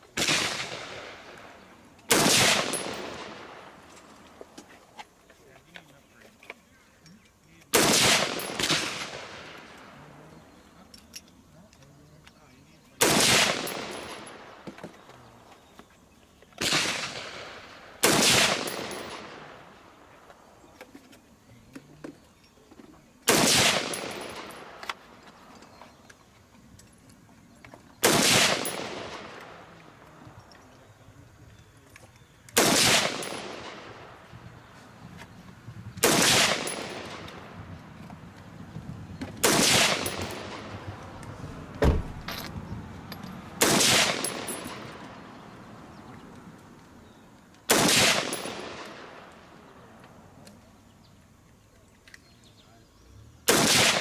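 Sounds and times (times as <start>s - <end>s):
gunshots with echo: 0.1s - 4.0s, 7.7s - 10.6s, 13.0s - 14.6s, 16.6s - 20.0s, 23.3s - 24.9s, 28.0s - 30.0s, 32.6s - 34.3s, 36.0s - 37.6s, 39.4s - 41.0s, 43.6s - 45.1s, 47.7s - 49.5s, 53.5s - 54.0s.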